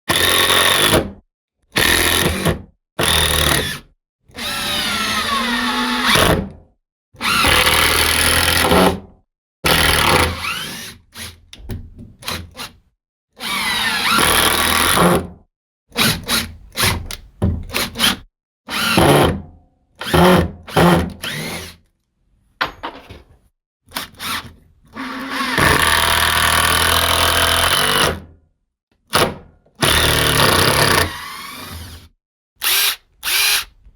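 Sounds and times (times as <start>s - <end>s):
impact driver driving screws: 32.6s - 33.8s.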